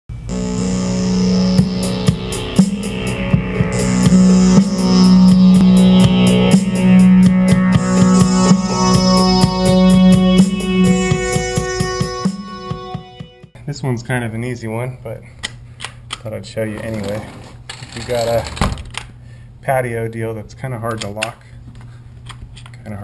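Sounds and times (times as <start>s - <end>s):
rock music: 0.2s - 13.5s
electric guitar: 0.3s - 12.1s
drum beat: 1.5s - 13.5s.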